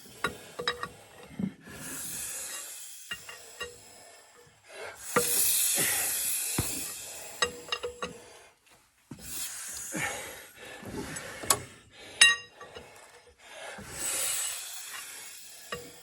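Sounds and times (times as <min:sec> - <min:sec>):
hiss: 0:01.7 - 0:07.6, 0:09.2 - 0:10.6, 0:13.8 - 0:16.0.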